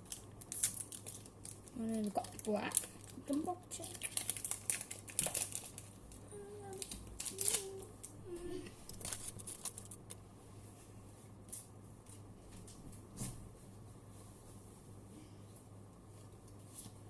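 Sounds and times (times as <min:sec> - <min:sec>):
pack wrapper crinkling: 0:00.0 - 0:08.1, 0:08.9 - 0:10.2.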